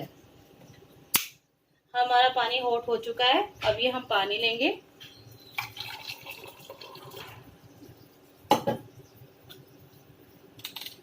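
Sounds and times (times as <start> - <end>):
water pouring into container: 5.6 - 7.6.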